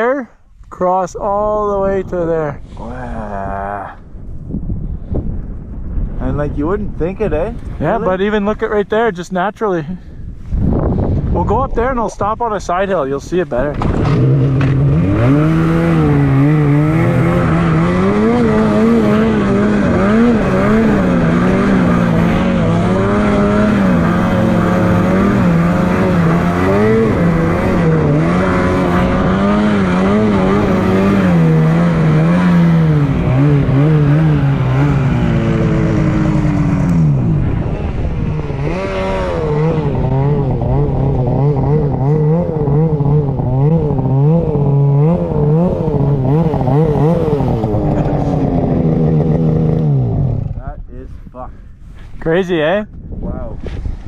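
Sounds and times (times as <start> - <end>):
snowmobile engine revving: 6.3 - 9.2, 12.4 - 51.5.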